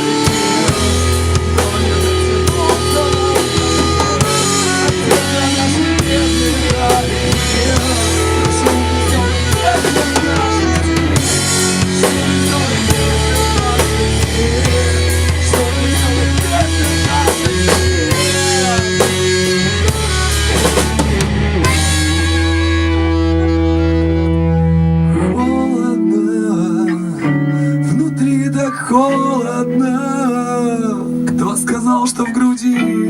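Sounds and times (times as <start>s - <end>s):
drum kit beat: 0.0s - 22.7s
held guitar notes: 0.0s - 31.9s
sustained bass notes: 0.0s - 32.0s.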